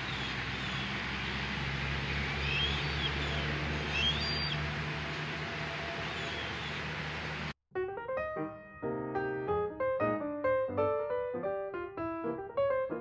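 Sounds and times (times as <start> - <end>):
hawks calling: 0.0 - 1.4, 2.2 - 7.4.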